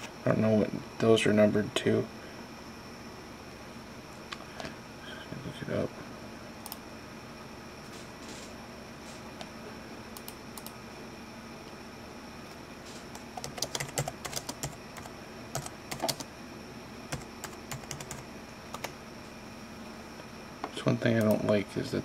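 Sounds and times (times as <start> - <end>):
faint room hum: 0.0 - 22.0
typing on computer keyboard: 13.4 - 16.3, 17.1 - 18.2.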